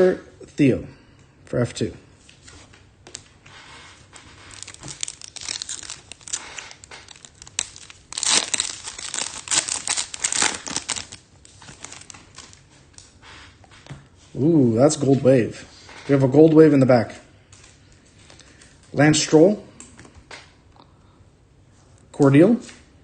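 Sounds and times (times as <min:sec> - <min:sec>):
foil wrapper crinkling: 0:04.1 - 0:13.0.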